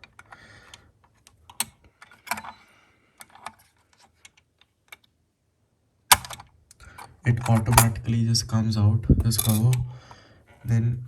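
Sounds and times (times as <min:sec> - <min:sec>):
lever latching snap: 0:06.1 - 0:06.4, 0:07.4 - 0:07.9
light metal clicks and scrapes: 0:09.2 - 0:09.8.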